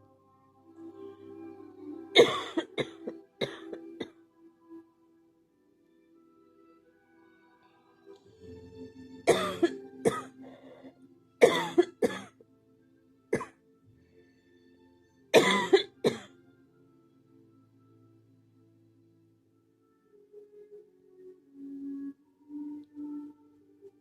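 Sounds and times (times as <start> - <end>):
soft background music: 0.0 - 24.0
person coughing hard: 2.2 - 4.1, 9.3 - 10.3, 11.4 - 12.3, 15.4 - 16.3.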